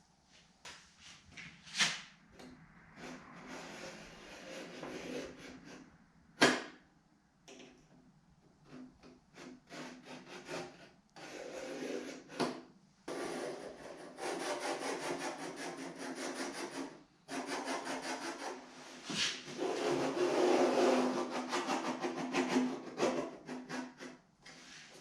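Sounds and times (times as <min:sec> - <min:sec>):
tool scraping sheet steel: 0:03.0 - 0:05.8, 0:08.7 - 0:12.5, 0:13.1 - 0:25.0.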